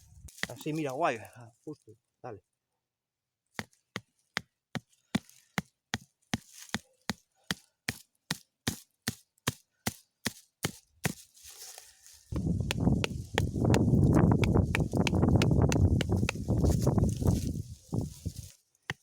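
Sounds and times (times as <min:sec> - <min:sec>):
tent peg hammered into stony ground: 0:00.3 - 0:00.8, 0:03.5 - 0:11.3, 0:12.3 - 0:17.6, 0:18.2 - 0:19.0.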